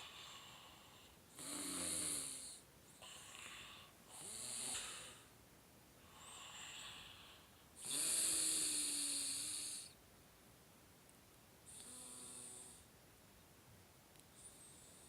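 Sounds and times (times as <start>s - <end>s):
snoring with low drone: 0.0s - 5.3s, 6.1s - 10.0s, 11.7s - 12.9s.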